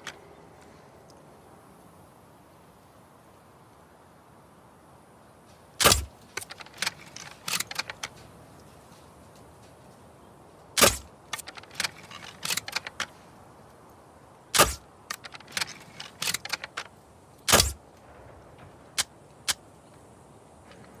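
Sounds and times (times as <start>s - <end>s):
clicks and rattles: 5.8s - 10.0s, 10.8s - 13.2s, 14.6s - 19.6s.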